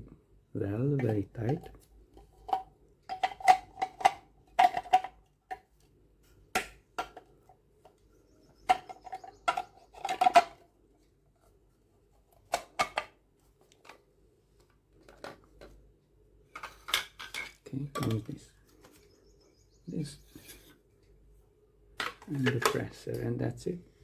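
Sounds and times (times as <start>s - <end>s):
plastic parts clicking and rattling: 1.0s - 5.9s, 6.5s - 10.7s, 12.3s - 14.0s, 14.6s - 15.8s.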